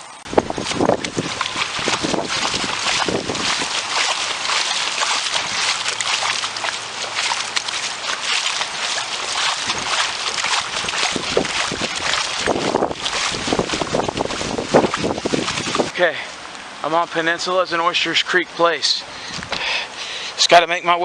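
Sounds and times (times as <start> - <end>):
legs wading through water: 0.2 - 16.6.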